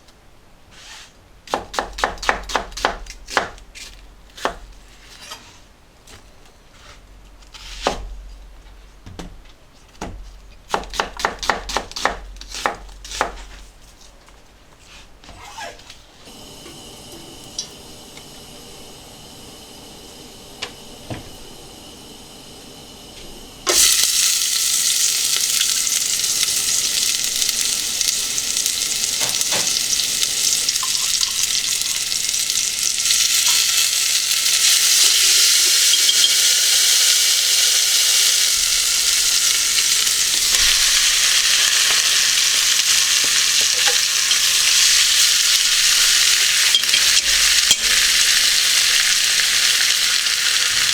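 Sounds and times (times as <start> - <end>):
food sizzling in a hot pan: 16.3 - 50.9.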